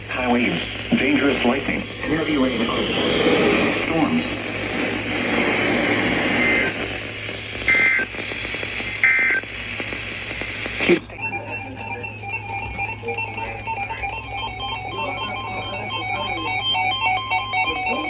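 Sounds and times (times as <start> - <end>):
radio hiss: 0.0 - 18.0
beeping electronic tune: 11.1 - 18.0.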